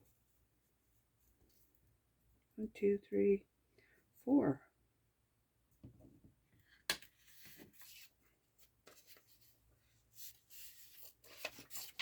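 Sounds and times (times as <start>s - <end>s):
paper rustling and scraping: 7.1s - 12.0s.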